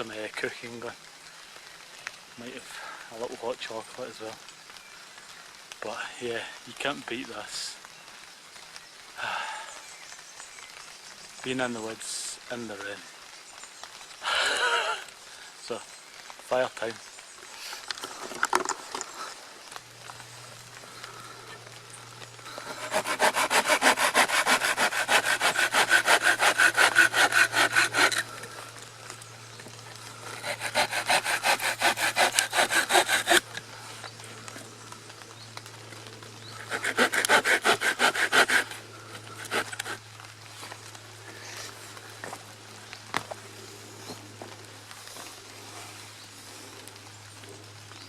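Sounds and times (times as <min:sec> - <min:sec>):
hand saw cutting wood: 0:22.5 - 0:28.6, 0:30.2 - 0:33.7, 0:36.6 - 0:40.0.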